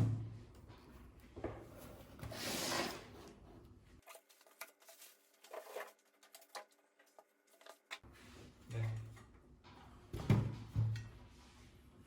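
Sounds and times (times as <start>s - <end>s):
cardboard packaging rustling: 4.0s - 8.0s.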